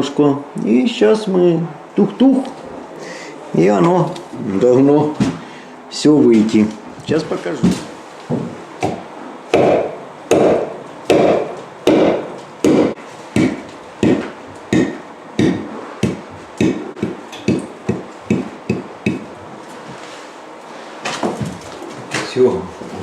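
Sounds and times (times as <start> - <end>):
hammer blows on concrete block: 9.6 - 19.3.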